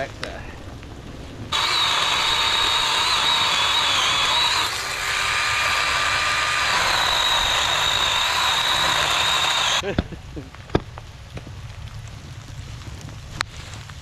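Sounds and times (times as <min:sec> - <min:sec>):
chainsaw cutting tree: 0:01.5 - 0:09.8.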